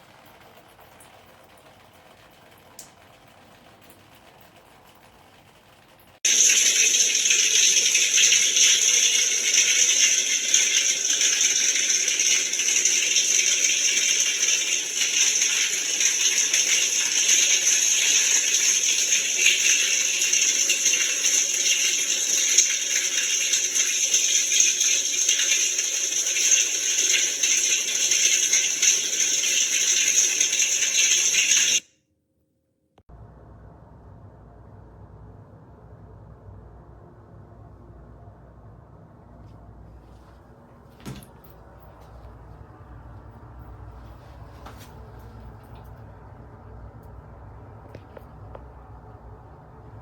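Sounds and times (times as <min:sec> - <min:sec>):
shower water pouring: 0:00.0 - 0:31.8.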